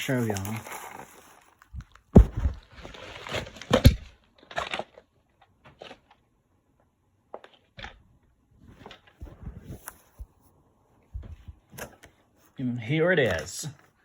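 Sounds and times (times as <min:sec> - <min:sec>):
cardboard packaging rustling: 0:00.0 - 0:05.0.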